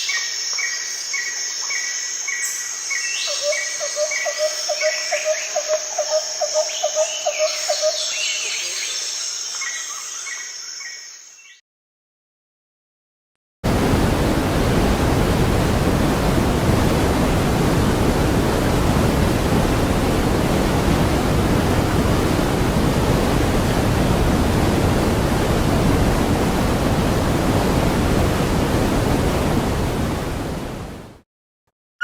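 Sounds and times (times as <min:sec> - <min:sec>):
falling water rushing: 0:13.7 - 0:31.0.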